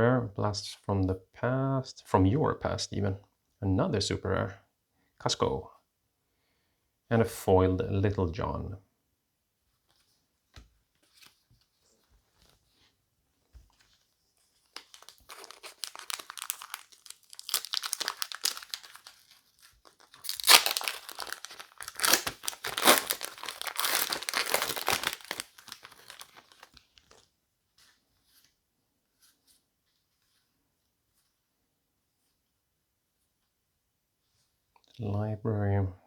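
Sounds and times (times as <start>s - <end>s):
wrapper crinkling and tearing: 14.7s - 27.2s.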